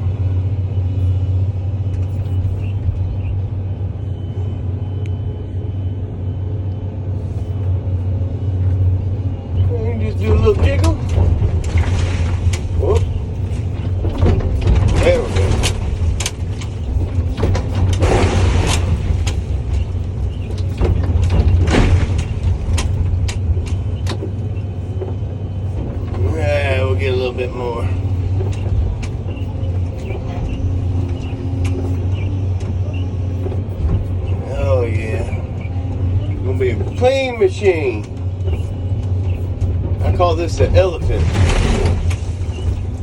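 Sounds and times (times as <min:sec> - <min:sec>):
diesel engine rumbling: 0:00.0 - 0:43.0
sharp clicks and knocks: 0:10.4 - 0:26.3, 0:28.2 - 0:34.4
short rushing noises: 0:11.0 - 0:23.1, 0:39.4 - 0:43.0.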